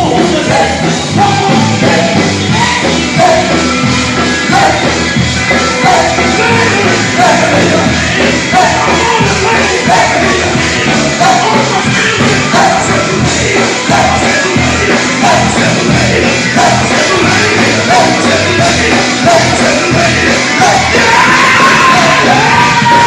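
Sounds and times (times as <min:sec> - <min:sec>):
band accompaniment: 0:00.0 - 0:23.0
gospel group singing: 0:00.0 - 0:23.0
lead voice shouting: 0:20.6 - 0:23.0.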